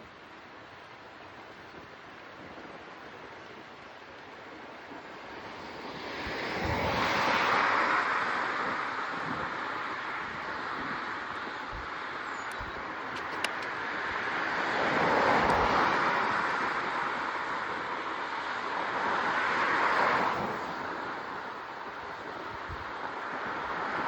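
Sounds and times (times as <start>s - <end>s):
rushing wind and road noise: 0.0s - 24.0s
sharp click: 12.5s - 13.7s.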